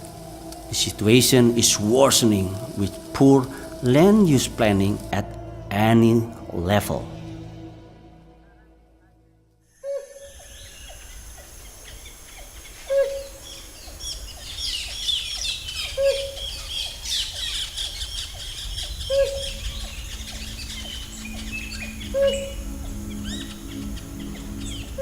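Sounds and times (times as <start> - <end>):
bird chorus chirping: 9.8 - 25.0
low bird call: 9.8 - 25.0.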